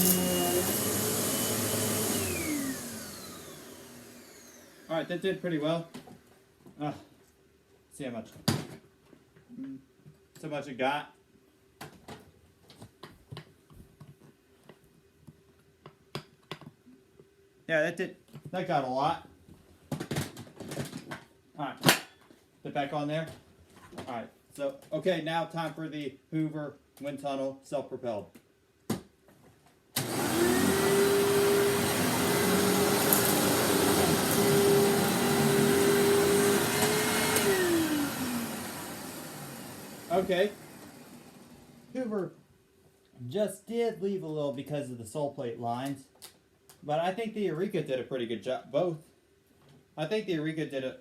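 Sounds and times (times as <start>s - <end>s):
vacuum cleaner motor whining: 0.0s - 5.9s, 30.0s - 41.9s.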